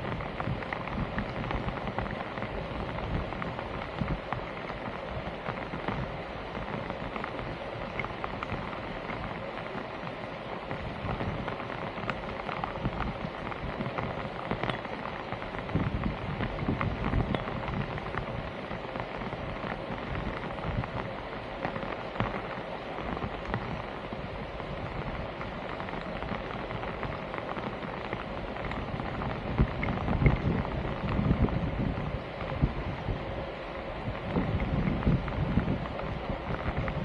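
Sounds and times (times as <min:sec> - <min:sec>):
small clicks and knocks: 0:14.0 - 0:15.0.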